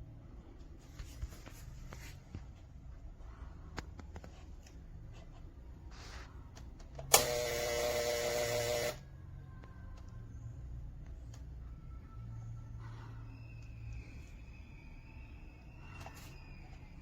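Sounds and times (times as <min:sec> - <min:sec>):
tyre inflator compressor buzzing: 0:07.1 - 0:09.0.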